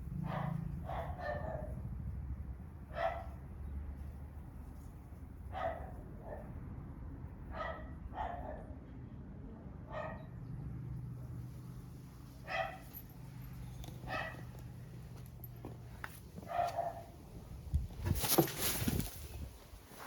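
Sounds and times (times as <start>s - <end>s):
dog barking: 0.1s - 1.8s, 2.9s - 3.4s, 5.5s - 6.5s, 7.5s - 8.7s, 9.9s - 10.3s, 12.4s - 12.9s, 14.0s - 14.5s, 16.4s - 17.1s.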